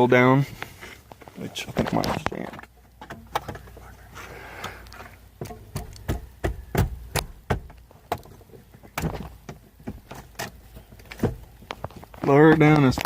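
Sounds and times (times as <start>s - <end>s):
steering column clicking and knocking: 5.4s - 11.4s.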